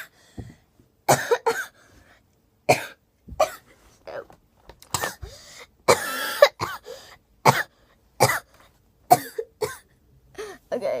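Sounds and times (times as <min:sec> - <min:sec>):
person coughing: 0:01.1 - 0:01.8, 0:02.7 - 0:04.2, 0:04.9 - 0:05.3, 0:05.9 - 0:06.9, 0:09.1 - 0:09.9.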